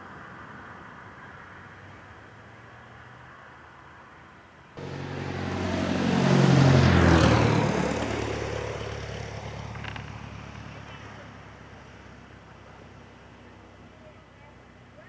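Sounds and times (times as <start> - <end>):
aircraft passing close by: 4.8 - 13.6.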